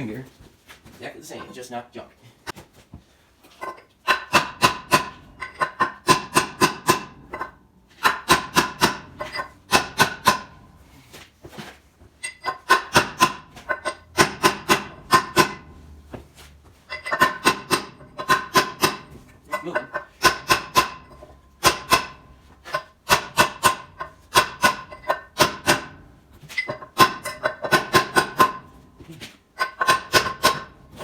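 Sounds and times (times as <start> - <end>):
hammer striking metal: 4.0 - 10.7, 12.2 - 15.7, 17.0 - 26.0, 26.6 - 28.7, 29.6 - 30.8.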